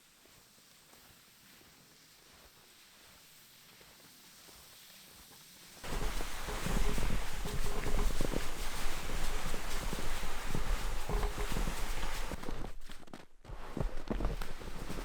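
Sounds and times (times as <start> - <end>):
footsteps crunching through snow: 5.8 - 15.0.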